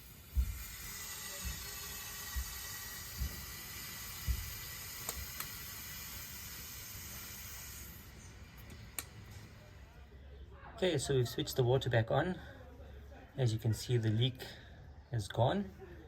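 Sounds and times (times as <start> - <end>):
water hissing through pipe: 0.0 - 8.5.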